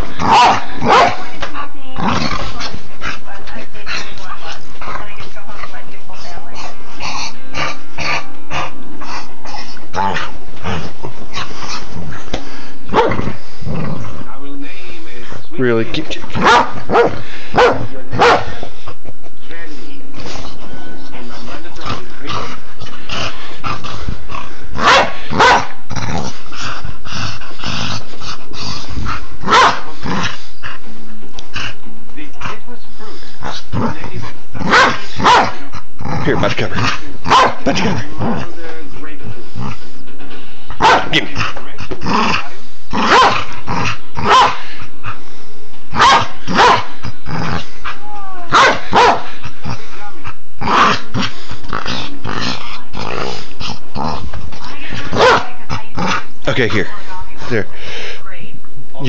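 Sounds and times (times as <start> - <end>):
dog growling: 0.0 - 5.6, 6.2 - 14.6, 21.2 - 45.3, 45.9 - 57.5
dog barking: 0.3 - 1.2, 16.4 - 18.5, 24.8 - 25.7, 29.5 - 29.8, 34.7 - 35.6, 37.3 - 37.6, 40.8 - 41.2, 43.1 - 43.4, 44.2 - 44.6, 46.0 - 46.9, 48.5 - 49.3, 55.2 - 55.5.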